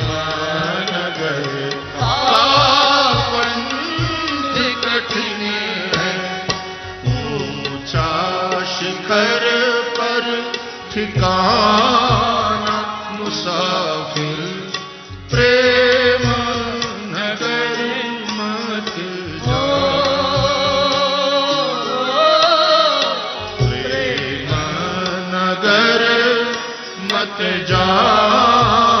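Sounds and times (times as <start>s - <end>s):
drum strokes: 0.0s - 29.0s
instrumental accompaniment: 0.0s - 29.0s.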